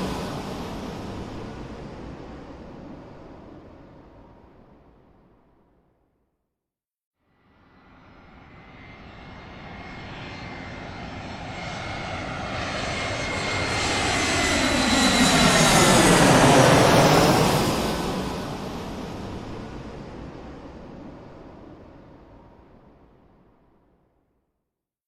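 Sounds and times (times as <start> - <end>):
airplane engine flying over: 0.0 - 4.8, 7.9 - 23.0
steady engine whine: 0.0 - 4.8, 8.4 - 22.7.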